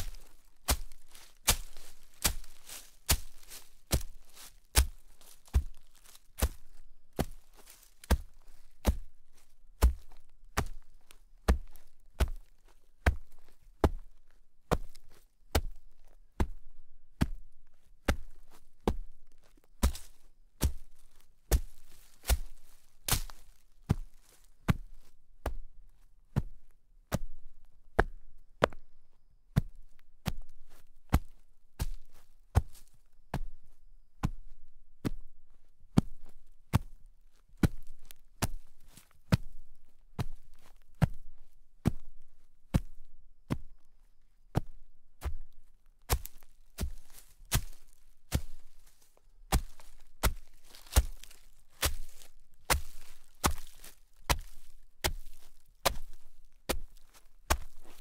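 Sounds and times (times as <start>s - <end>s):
footsteps crunching in snow: 0.0s - 13.5s, 19.8s - 25.1s, 45.4s - 58.0s.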